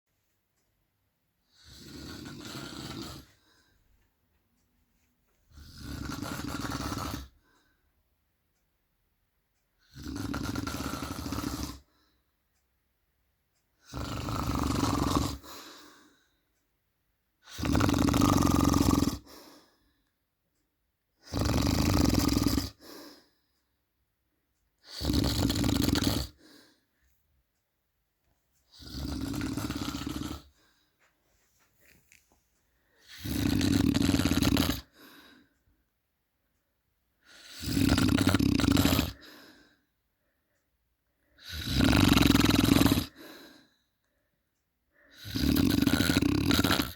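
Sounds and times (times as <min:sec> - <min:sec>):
man snoring loudly: 0:01.5 - 0:03.4, 0:05.5 - 0:07.4, 0:09.8 - 0:11.9, 0:13.8 - 0:15.8, 0:17.4 - 0:19.4, 0:21.2 - 0:22.9, 0:24.8 - 0:26.5, 0:28.7 - 0:30.6, 0:33.0 - 0:35.0, 0:37.2 - 0:39.4, 0:41.4 - 0:43.3, 0:45.1 - 0:46.9.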